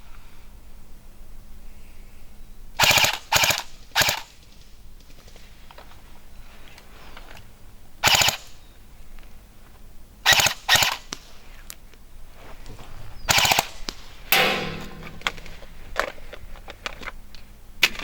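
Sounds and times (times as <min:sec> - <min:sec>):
airsoft gun bursts: 0:02.8 - 0:04.3, 0:10.3 - 0:11.0, 0:13.3 - 0:13.8.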